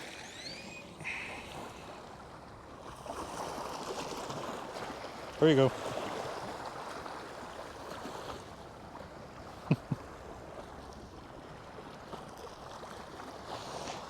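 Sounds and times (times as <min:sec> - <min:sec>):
short falling squeaks: 0:00.0 - 0:01.8
wind: 0:00.0 - 0:14.0
waves washing on shore: 0:01.0 - 0:14.0.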